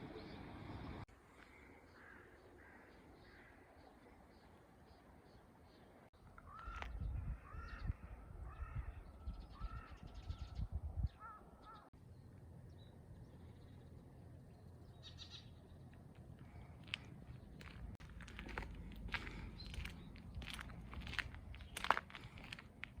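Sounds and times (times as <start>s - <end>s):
crow cawing: 1.9s - 3.7s, 6.4s - 7.8s, 11.2s - 11.9s.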